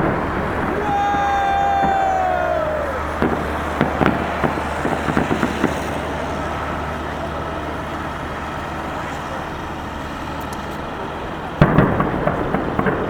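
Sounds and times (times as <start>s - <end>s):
firework whistle: 0.0s - 6.0s
firework crackling pops: 0.0s - 6.2s
low background rumble: 0.0s - 13.0s.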